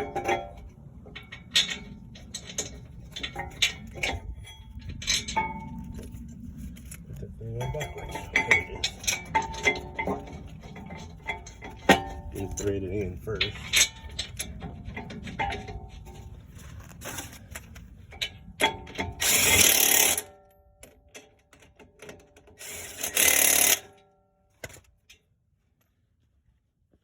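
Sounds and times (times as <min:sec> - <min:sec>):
power tool bursts: 0:19.2 - 0:20.2, 0:22.6 - 0:23.9.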